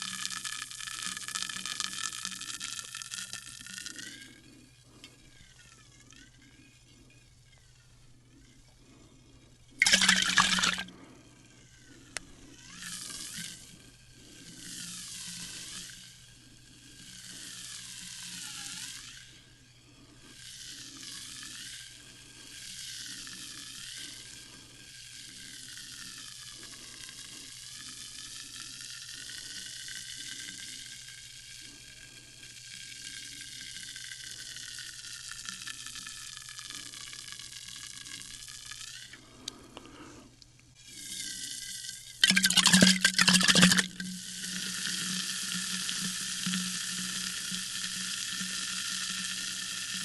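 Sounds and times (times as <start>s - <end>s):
sparkling water fizzing: 9.8s - 10.8s, 42.2s - 44.0s.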